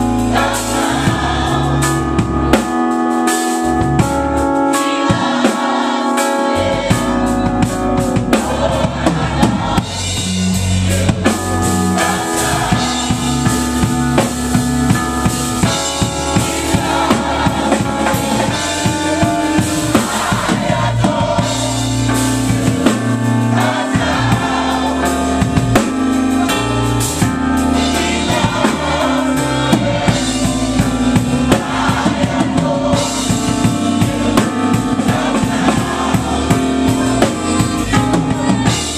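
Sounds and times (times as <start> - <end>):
choir singing: 0.0 - 2.7, 4.6 - 14.6, 15.5 - 38.9
band with drums and bass: 0.0 - 38.9.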